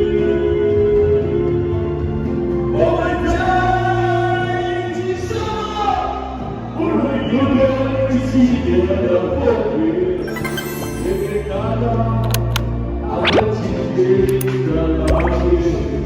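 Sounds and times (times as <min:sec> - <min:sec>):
sustained musical accompaniment: 0:10.2 - 0:13.4.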